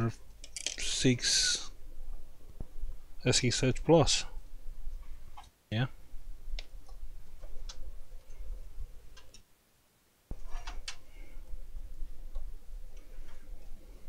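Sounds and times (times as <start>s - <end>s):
small parts and tools clicking: 0.4s - 1.0s.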